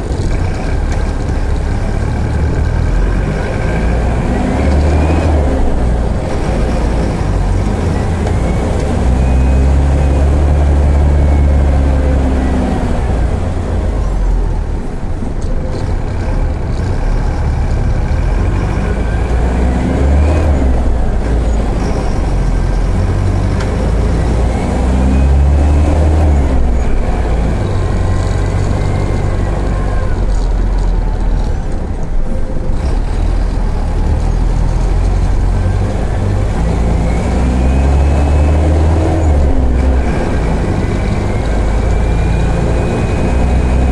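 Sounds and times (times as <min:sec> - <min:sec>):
bus diesel engine accelerating: 0:00.0 - 0:43.9.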